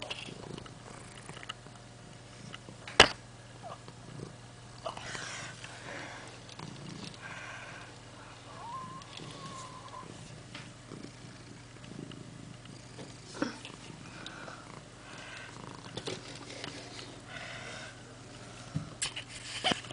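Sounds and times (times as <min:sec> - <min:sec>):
cat purring: 0:00.0 - 0:02.8, 0:03.6 - 0:18.5.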